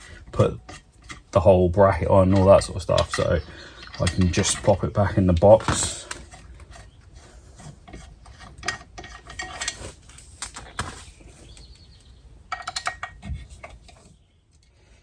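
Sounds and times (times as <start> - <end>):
metal parts clinking and knocking: 2.0 - 6.8, 8.4 - 9.9, 12.5 - 14.1.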